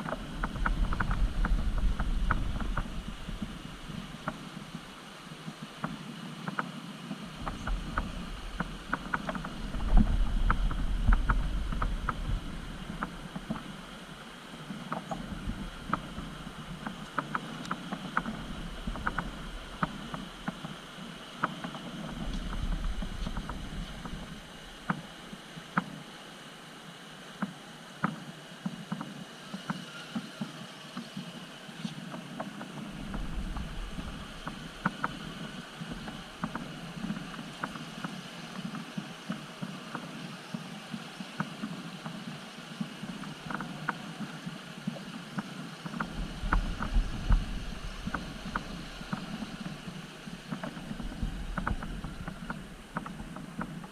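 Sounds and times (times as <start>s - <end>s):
wind buffeting microphone: 0.0s - 26.1s, 32.1s - 53.9s
toy car drivetrain hum: 28.9s - 53.9s.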